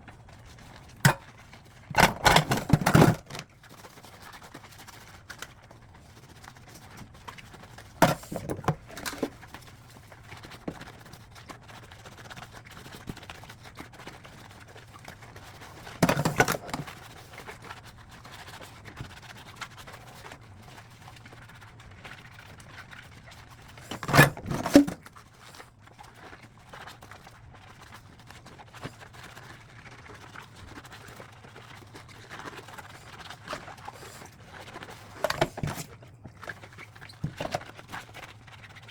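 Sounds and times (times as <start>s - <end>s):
dishes clattering and scraping: 1.0s - 1.2s, 1.9s - 3.4s, 8.0s - 9.4s, 16.0s - 16.9s, 23.8s - 25.0s, 35.1s - 35.9s.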